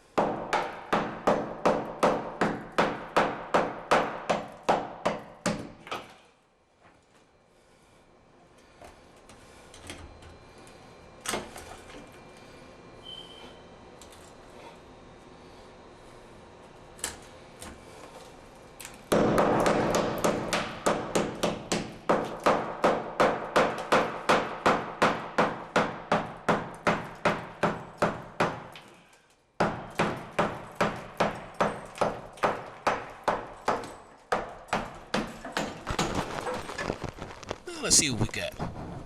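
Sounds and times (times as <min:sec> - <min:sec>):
hammer chipping tile: 0:19.1 - 0:28.8, 0:29.6 - 0:36.6.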